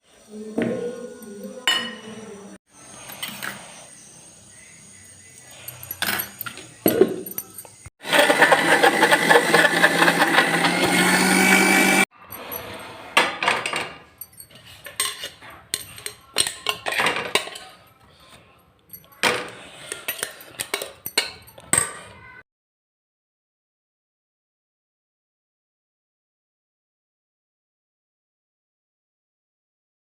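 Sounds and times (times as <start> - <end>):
kitchen utensils clinking: 1.2 - 3.8, 4.9 - 11.0, 12.2 - 22.4
mixer grinder motor hum: 8.0 - 12.1.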